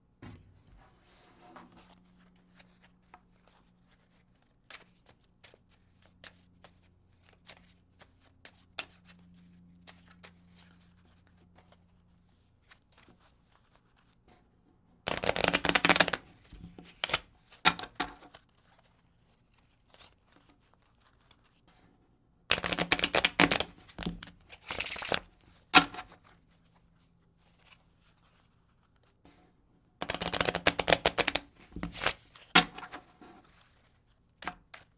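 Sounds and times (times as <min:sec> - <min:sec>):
cards being shuffled: 0:01.6 - 0:11.8, 0:15.1 - 0:21.6, 0:22.5 - 0:26.8, 0:30.0 - 0:34.9
playing cards clicking: 0:15.1 - 0:18.4, 0:22.5 - 0:26.2, 0:30.0 - 0:33.1.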